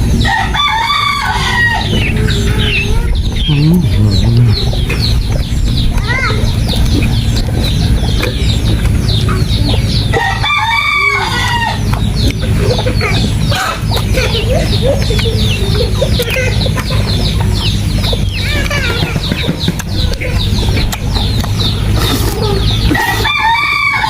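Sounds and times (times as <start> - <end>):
low rumble: 0.0 - 10.7
chickens clucking: 0.0 - 24.0
rooster crowing: 0.2 - 2.8, 10.1 - 11.8, 23.0 - 24.0.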